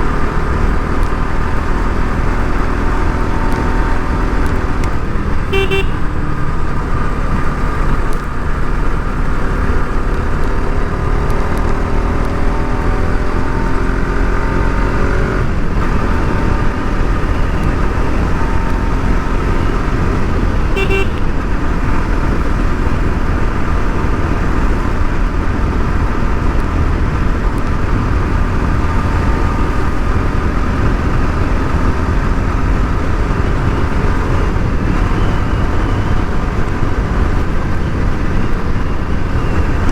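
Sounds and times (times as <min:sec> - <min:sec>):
motorcycle engine running: 0:00.0 - 0:39.9
vehicle horn toots: 0:05.5 - 0:06.2, 0:20.7 - 0:21.4
wind rumble on microphone: 0:06.1 - 0:39.9.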